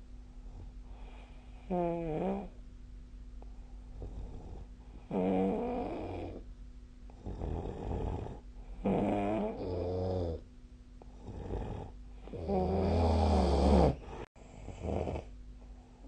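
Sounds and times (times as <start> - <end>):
faint steady hum: 0.0 - 16.0
person snoring: 1.7 - 2.5, 4.0 - 6.4, 7.2 - 10.4, 11.2 - 15.3.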